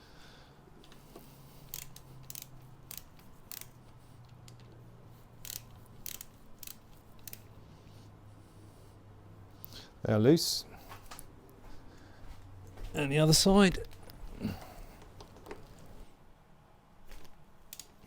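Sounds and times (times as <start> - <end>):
ratchet spanner clicking: 1.6 - 4.7, 5.4 - 7.5, 17.7 - 18.0.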